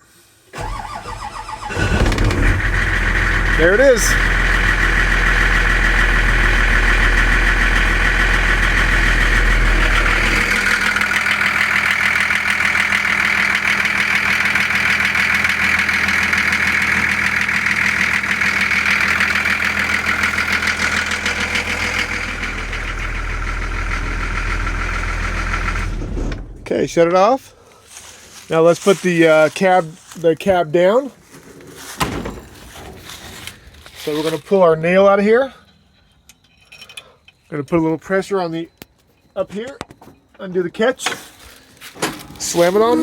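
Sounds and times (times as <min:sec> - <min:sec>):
diesel truck engine idling: 0:00.6 - 0:28.1, 0:42.1 - 0:43.0.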